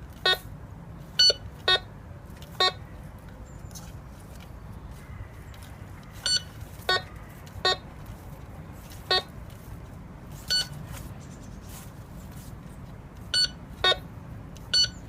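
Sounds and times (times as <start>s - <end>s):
metal detector beeps: 0.2s - 0.5s, 1.2s - 1.9s, 2.5s - 2.8s, 6.2s - 7.8s, 9.0s - 9.3s, 10.5s - 10.8s, 13.3s - 14.0s, 14.7s - 15.0s.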